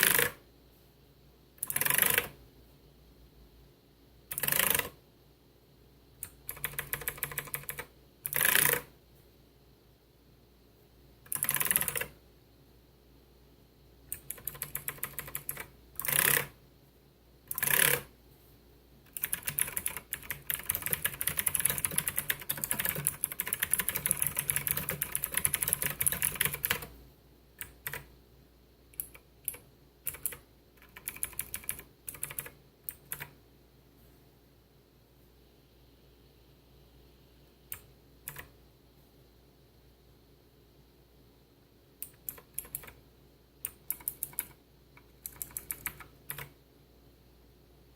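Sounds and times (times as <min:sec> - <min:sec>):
clicky mechanical keyboard typing: 0:00.0 - 0:00.4, 0:01.6 - 0:02.4, 0:04.3 - 0:05.0, 0:06.2 - 0:08.9, 0:11.3 - 0:12.2, 0:14.1 - 0:16.6, 0:17.5 - 0:18.1, 0:19.1 - 0:26.9, 0:27.6 - 0:28.1, 0:28.9 - 0:33.4, 0:37.7 - 0:38.5, 0:42.0 - 0:43.0, 0:43.6 - 0:46.6.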